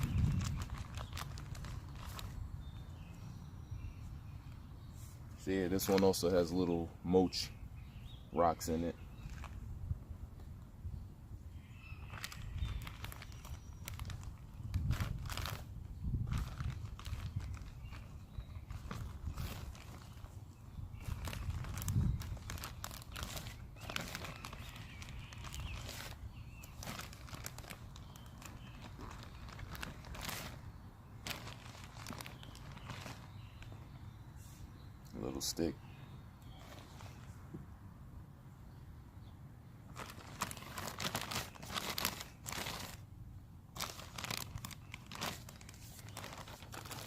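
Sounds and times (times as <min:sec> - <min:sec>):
plastic bag crinkling: 0:00.0 - 0:02.4, 0:09.2 - 0:09.6, 0:12.0 - 0:20.4, 0:21.0 - 0:33.8, 0:39.9 - 0:43.0, 0:43.7 - 0:47.0.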